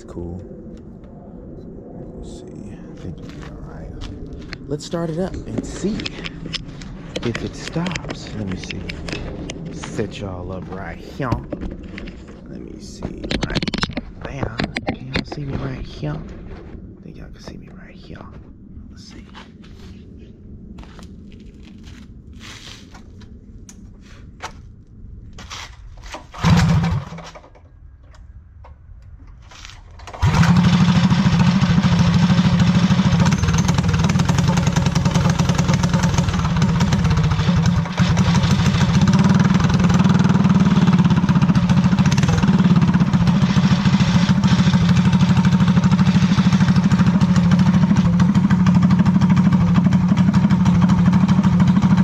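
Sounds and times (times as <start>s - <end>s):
small engine starting and running: 26.1s - 27.6s, 30.0s - 52.0s.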